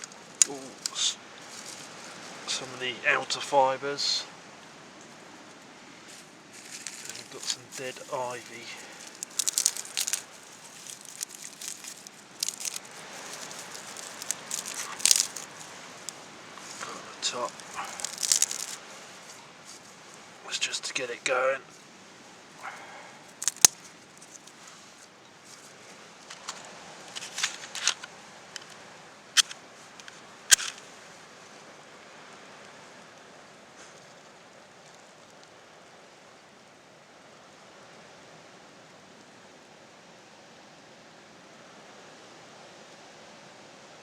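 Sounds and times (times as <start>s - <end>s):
dry ivy crackling and crunching: 0.0s - 2.5s, 6.1s - 20.4s, 22.5s - 28.0s, 29.4s - 30.9s
steady background hiss: 0.0s - 44.0s.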